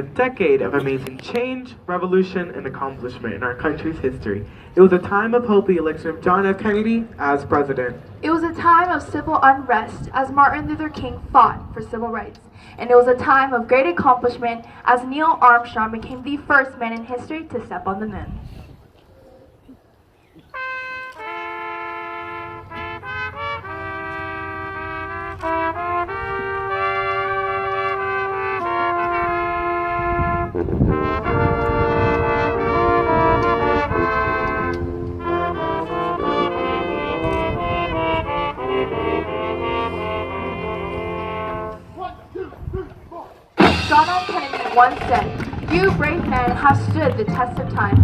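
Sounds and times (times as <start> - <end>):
marching band brass chords: 20.5 - 42.1, 43.6 - 48.0
full marching band playing: 20.6 - 41.9, 43.6 - 48.0.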